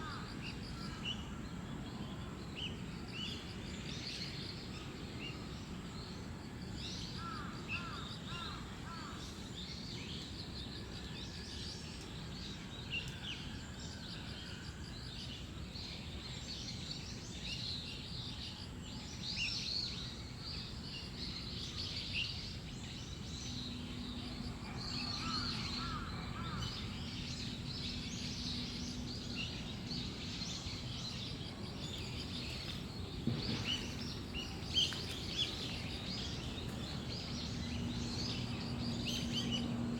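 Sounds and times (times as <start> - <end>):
songbirds chirping: 0.0 - 39.9
distant low rumble: 26.8 - 39.5.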